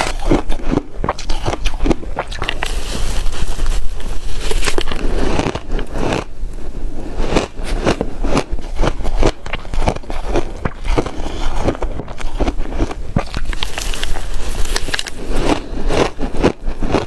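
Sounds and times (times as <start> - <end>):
ice being crunched: 1.1 - 6.2, 12.8 - 16.6.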